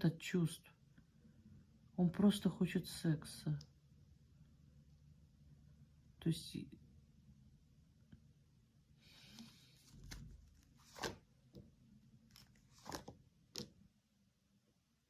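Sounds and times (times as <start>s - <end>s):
soft rustle: 9.0s - 11.6s.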